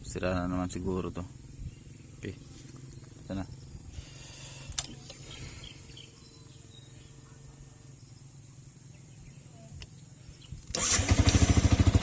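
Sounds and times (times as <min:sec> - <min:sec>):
motorcycle engine starting and running: 0:00.0 - 0:06.6, 0:10.5 - 0:12.0.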